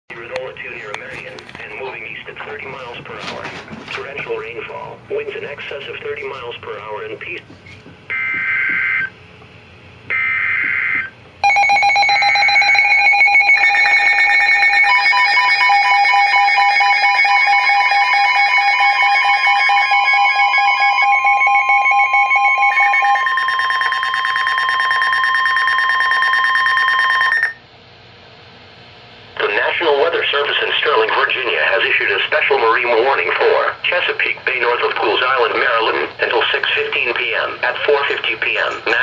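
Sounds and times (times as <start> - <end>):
shrill pulsing alert tone: 10.1 - 27.6
steady high tone: 10.1 - 27.6.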